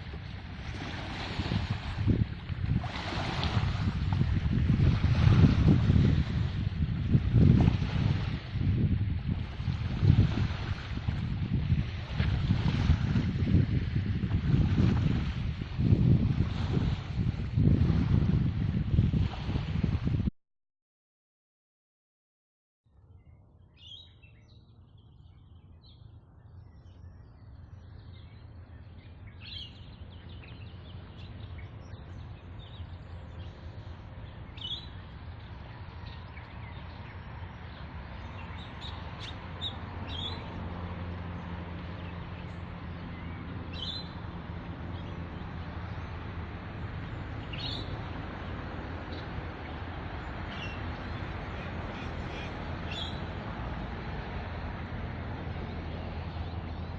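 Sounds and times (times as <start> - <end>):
birds chirping: 23.7 - 40.6, 41.4 - 44.3, 47.0 - 53.4
low outdoor rumble: 24.9 - 56.9.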